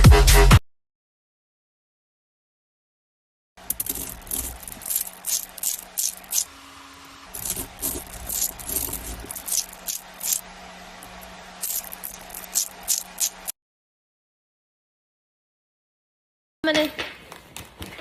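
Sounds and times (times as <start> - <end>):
sharp clicks and rattling: 3.6 - 6.5, 7.4 - 13.5
steady low hum: 3.6 - 13.5.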